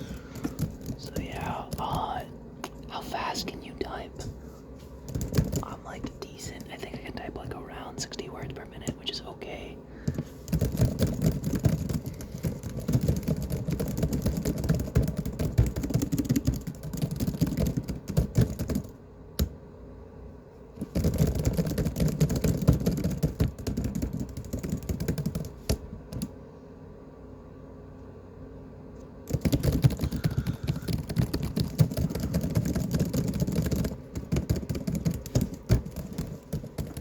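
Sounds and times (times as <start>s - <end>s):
laptop keyboard typing: 0.0s - 2.8s, 5.0s - 7.9s, 10.0s - 19.6s, 20.8s - 26.3s, 29.2s - 37.0s.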